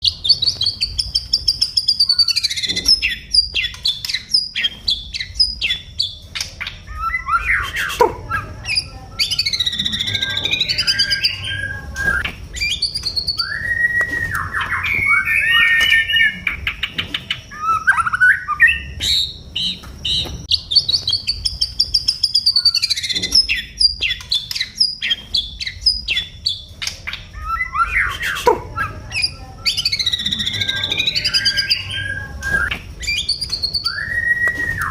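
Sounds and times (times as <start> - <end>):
songbird singing whistled phrases: 0.0 - 34.9.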